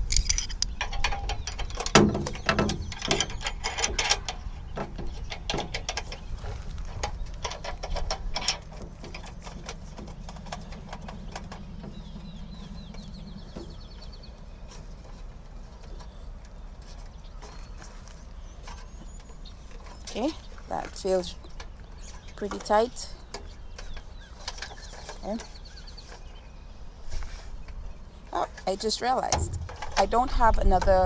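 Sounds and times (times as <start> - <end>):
metal and plastic parts clicking: 0.0 - 11.7
wind rumbling on microphone: 0.0 - 31.0.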